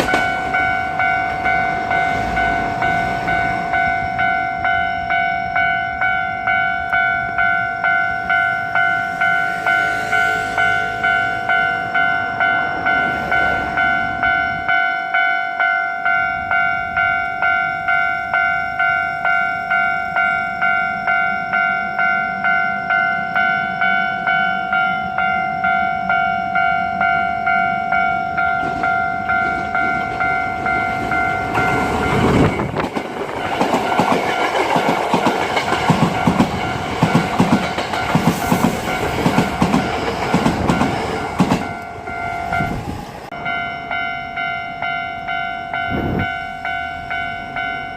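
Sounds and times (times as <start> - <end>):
wheels clacking over rail joints: 0.0 - 3.8, 28.3 - 42.6
level-crossing warning bell: 0.0 - 47.9
train passing with rumble: 0.0 - 47.9.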